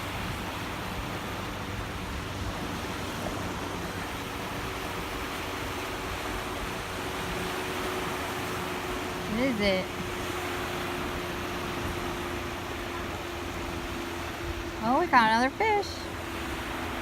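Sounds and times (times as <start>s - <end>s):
surf: 0.0s - 17.0s
wind: 0.0s - 17.0s.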